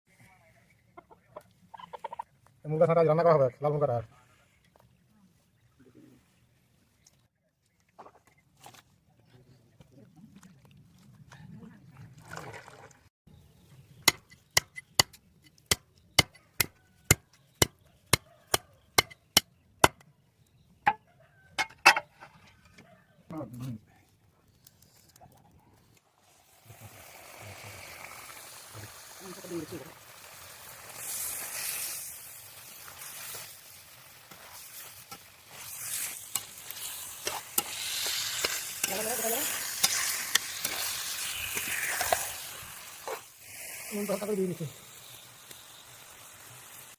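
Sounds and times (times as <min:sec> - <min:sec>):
curry sizzling in a pan: 0:26.2 - 0:46.9.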